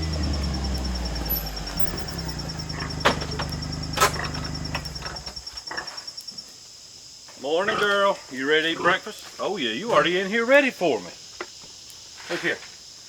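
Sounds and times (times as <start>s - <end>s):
utility vehicle engine winding down: 0.0s - 5.4s
sharp knocks: 2.8s - 5.4s.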